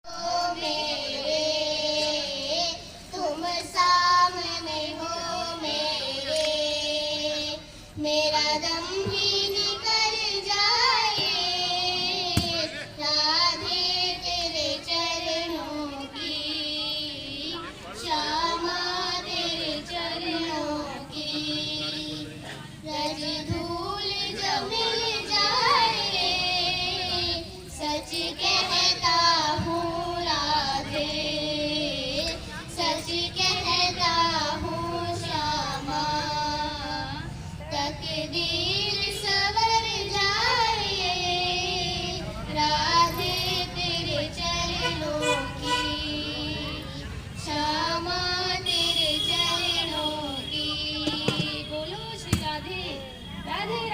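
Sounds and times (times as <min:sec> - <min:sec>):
girl singing: 0:00.0 - 0:22.2.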